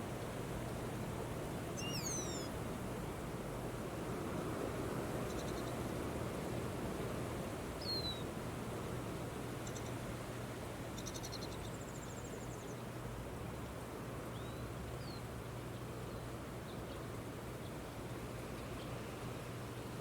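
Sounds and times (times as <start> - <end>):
small animal chirps and trill: 1.8 - 2.5.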